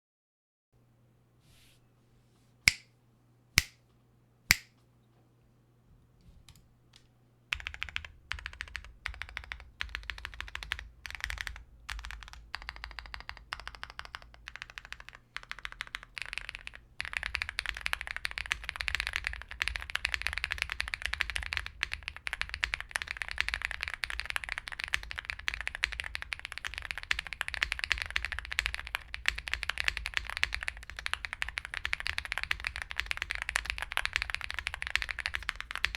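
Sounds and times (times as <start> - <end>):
sharp keyboard clicks: 6.5 - 35.9
mechanical keyboard typing: 7.5 - 35.9.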